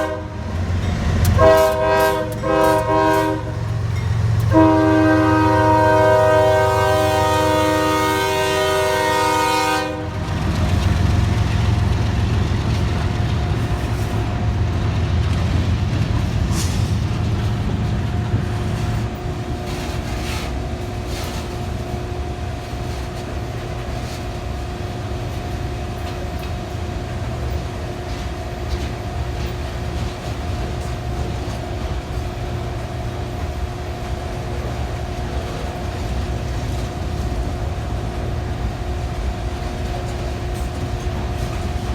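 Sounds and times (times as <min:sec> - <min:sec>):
locomotive air horn chord: 0:00.0 - 0:00.6, 0:01.2 - 0:03.8, 0:04.4 - 0:10.3
locomotive engine rumbling: 0:00.0 - 0:41.9
wheels clicking on rail joints: 0:00.5 - 0:06.8, 0:10.0 - 0:21.8, 0:25.3 - 0:41.9.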